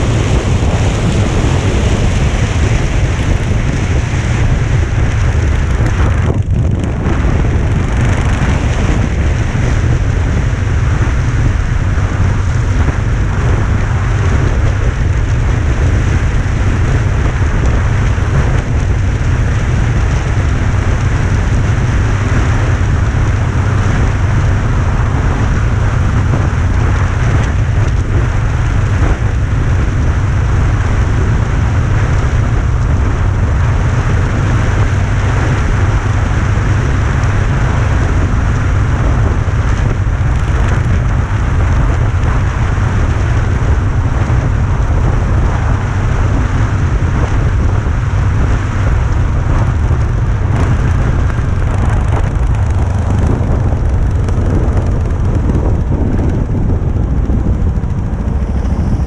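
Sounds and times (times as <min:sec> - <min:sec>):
road noise: 0:00.0 - 0:59.0
wind buffeting microphone: 0:00.0 - 0:59.0.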